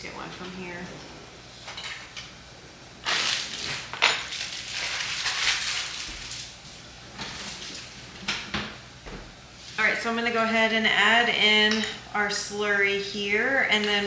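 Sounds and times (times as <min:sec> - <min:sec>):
kitchen utensils clattering: 0:03.1 - 0:06.4.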